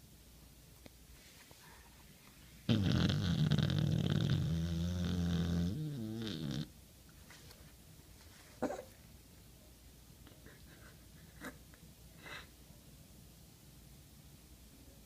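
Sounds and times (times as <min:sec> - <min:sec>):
dog snoring: 0:02.7 - 0:06.7
faint breath: 0:12.2 - 0:12.6.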